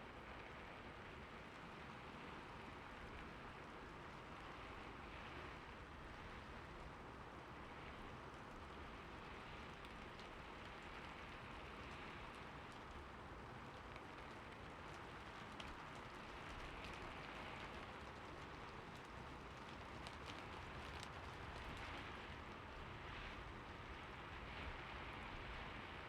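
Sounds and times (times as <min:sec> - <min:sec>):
steady rain falling: 0:00.0 - 0:26.0
raindrops ticking: 0:09.6 - 0:21.9.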